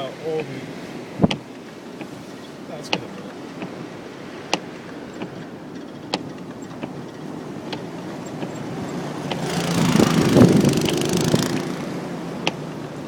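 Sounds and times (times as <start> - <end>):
motor vehicle passing: 3.7 - 13.0.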